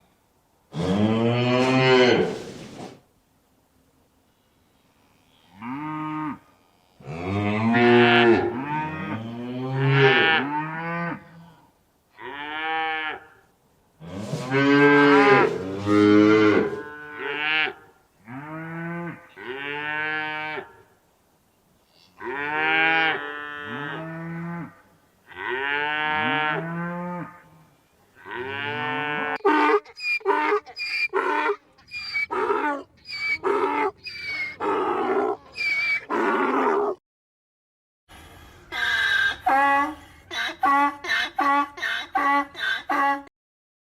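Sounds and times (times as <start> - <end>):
cattle mooing: 14.0 - 20.7
short high-pitched animal calls: 29.4 - 36.7.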